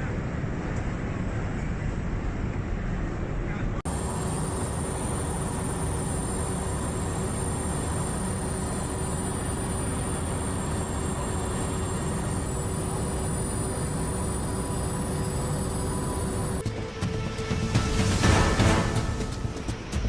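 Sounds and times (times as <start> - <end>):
faint hum tones: 3.5 - 16.6
machinery low rumble: 3.8 - 16.6
thin high whine: 3.9 - 16.6.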